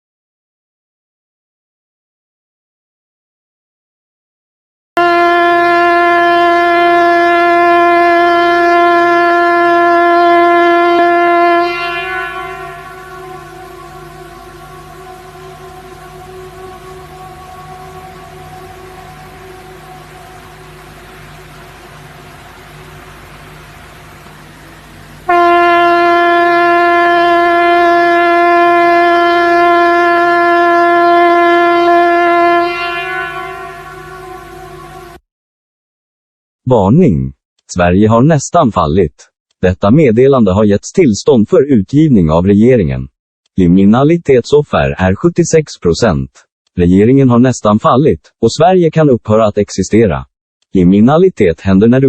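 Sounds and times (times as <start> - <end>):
buzzy horn-like alert tone: 5.0 - 22.8, 25.2 - 35.2.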